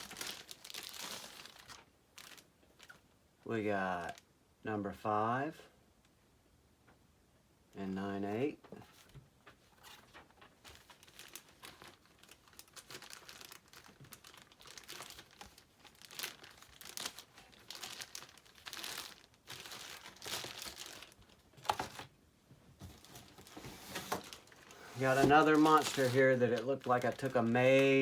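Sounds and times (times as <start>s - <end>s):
packaging crinkling and rustling: 0.0s - 3.0s, 8.9s - 22.2s, 22.8s - 28.0s.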